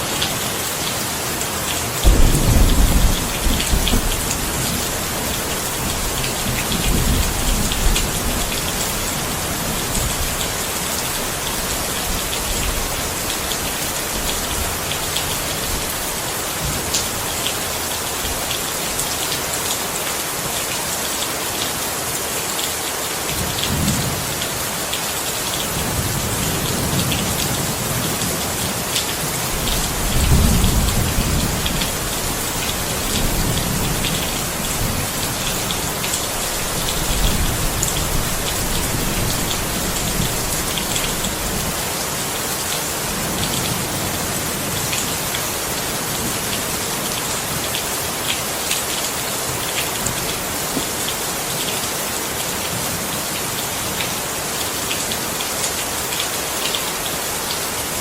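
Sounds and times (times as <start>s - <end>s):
heavy rain on hard surface: 0.0s - 58.0s
thunder rumbling: 2.0s - 10.3s, 29.6s - 41.8s.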